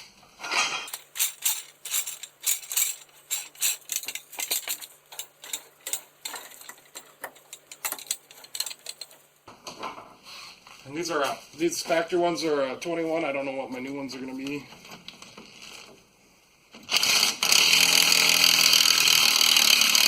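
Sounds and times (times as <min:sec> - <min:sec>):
hand tools clicking on metal: 0:00.9 - 0:09.3.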